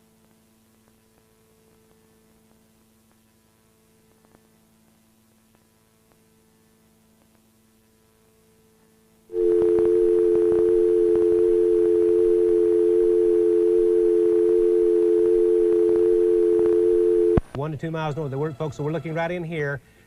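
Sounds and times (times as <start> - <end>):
faint mains hum: 0.0 - 20.0
telephone dial tone: 9.3 - 17.4.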